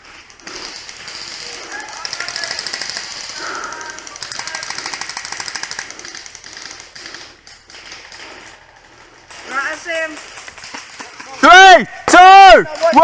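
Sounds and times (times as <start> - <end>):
airsoft gun firing bursts: 0.4 - 8.7.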